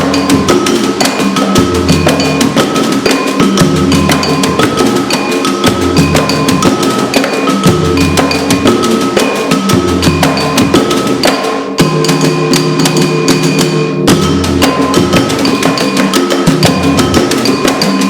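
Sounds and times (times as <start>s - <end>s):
deep low drum: 0.0s - 3.0s, 13.5s - 17.8s
fast drum strokes: 0.0s - 18.0s
ringing high percussion notes: 0.0s - 18.0s.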